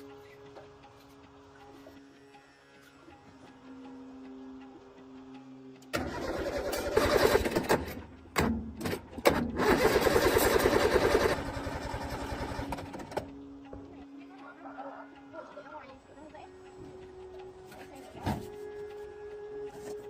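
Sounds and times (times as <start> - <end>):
tractor engine cranking: 5.9 - 13.4.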